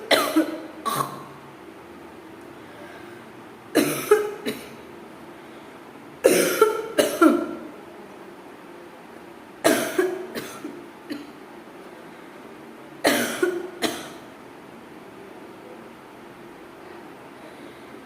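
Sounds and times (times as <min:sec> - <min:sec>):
person coughing harshly: 0:00.0 - 0:01.3, 0:03.8 - 0:04.8, 0:06.2 - 0:07.6, 0:09.6 - 0:11.3, 0:13.0 - 0:14.2.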